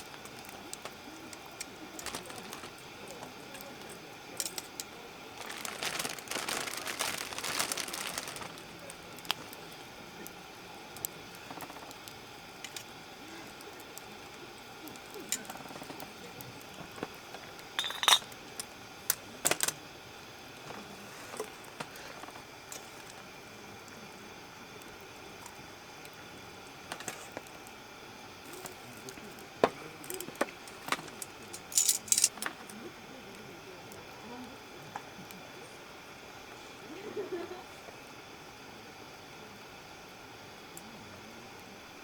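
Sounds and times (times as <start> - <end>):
rustling: 2.0 - 2.8, 4.5 - 9.6.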